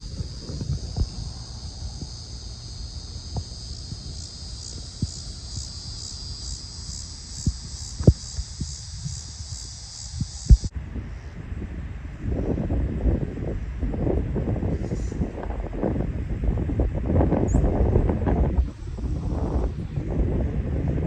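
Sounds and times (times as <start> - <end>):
insects buzzing: 0.0 - 21.0
low thumps: 10.1 - 10.7.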